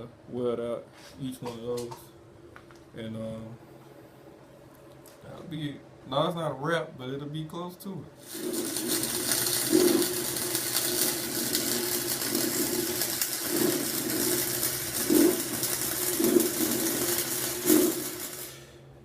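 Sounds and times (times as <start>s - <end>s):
welding arc crackling sizzle: 8.2s - 18.8s
welder low hum: 8.2s - 19.0s.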